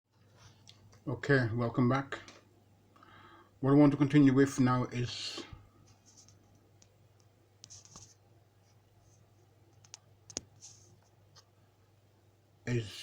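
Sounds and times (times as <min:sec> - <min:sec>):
faint steady hum: 0:00.1 - 0:13.0
small clicks and rustles: 0:05.8 - 0:11.6.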